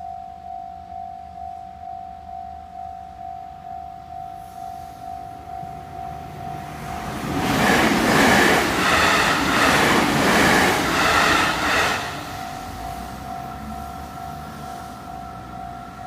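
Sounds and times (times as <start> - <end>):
level crossing warning bell: 0.0 - 16.0
train wheels rushing and clattering: 5.8 - 14.7.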